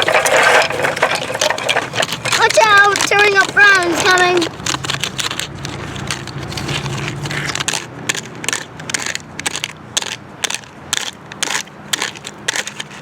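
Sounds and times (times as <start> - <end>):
toy truck scraping dirt: 0.0 - 13.0.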